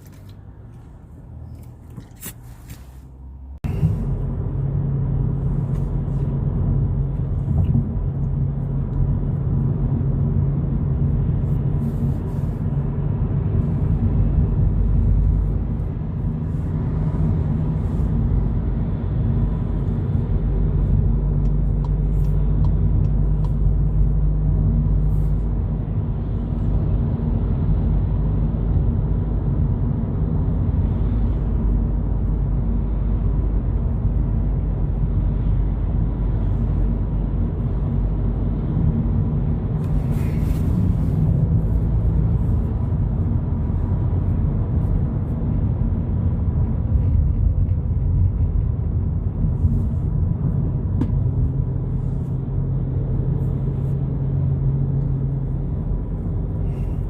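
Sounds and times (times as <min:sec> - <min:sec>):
car road and engine rumble: 0:00.0 - 0:57.0.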